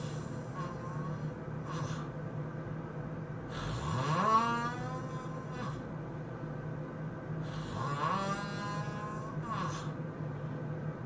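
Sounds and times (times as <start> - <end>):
person snoring: 0.0 - 2.1, 3.5 - 5.9, 7.4 - 10.0.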